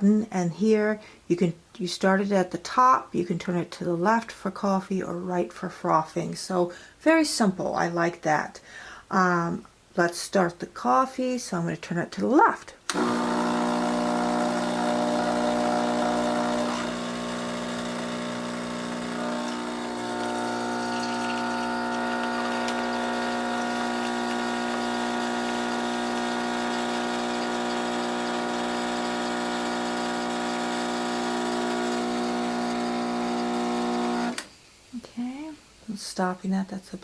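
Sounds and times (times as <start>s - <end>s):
espresso machine pump buzzing: 12.9s - 34.5s.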